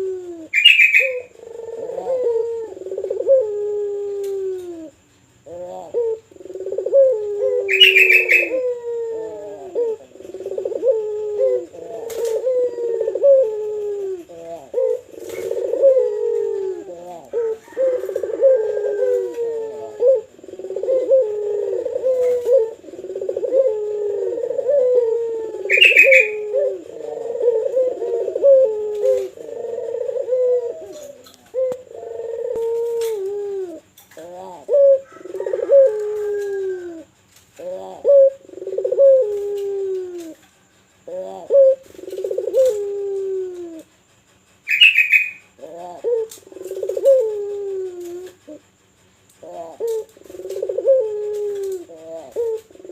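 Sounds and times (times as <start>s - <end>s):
dove cooing: 0.0s - 52.9s.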